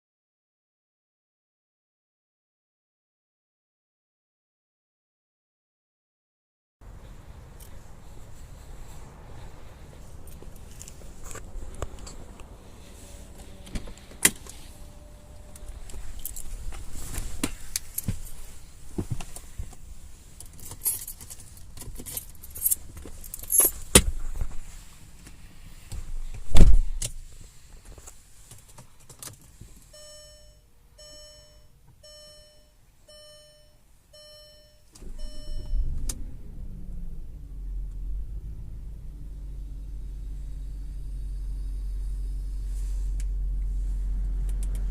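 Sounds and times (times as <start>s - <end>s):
low steady engine rumble: 6.8s - 44.9s
loud thump: 26.0s - 27.1s
car warning chime: 29.9s - 36.2s.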